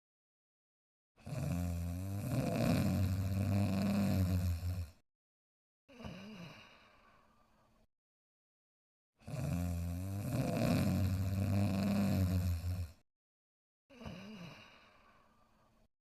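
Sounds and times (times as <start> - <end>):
cartoon dog snoring: 1.2 - 5.0, 9.2 - 13.0.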